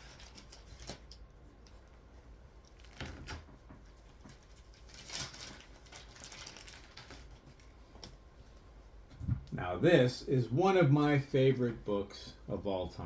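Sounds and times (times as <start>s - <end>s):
light rustling of packing: 2.6s - 9.6s.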